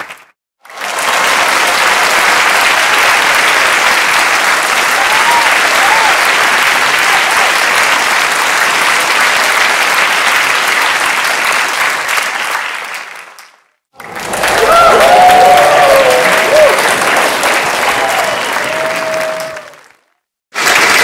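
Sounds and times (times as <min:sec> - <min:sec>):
audience applause: 0:00.0 - 0:21.0
voices cheering: 0:04.7 - 0:07.6, 0:14.0 - 0:20.0.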